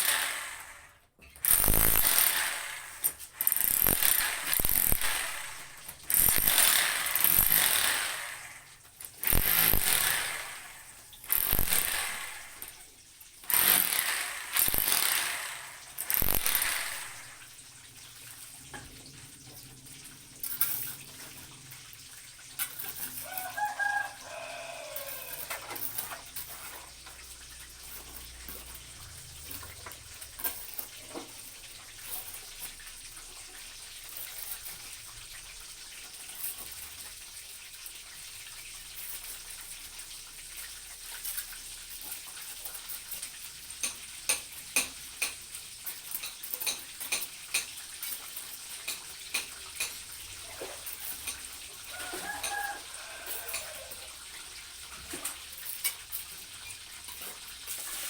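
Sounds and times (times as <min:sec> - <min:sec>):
rotary hammer breaking floor: 0:01.4 - 0:08.3, 0:11.3 - 0:12.8, 0:13.5 - 0:17.2
rooster crowing: 0:23.1 - 0:25.9, 0:51.8 - 0:54.2.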